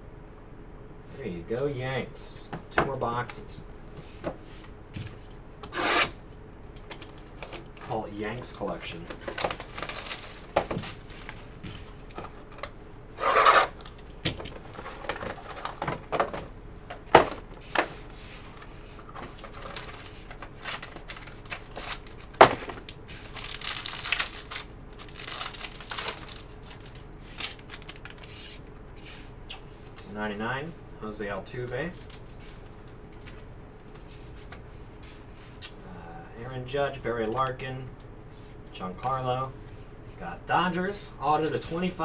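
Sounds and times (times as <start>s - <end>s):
card packaging rustling: 6.7s - 12.6s, 13.2s - 28.7s, 31.8s - 34.6s.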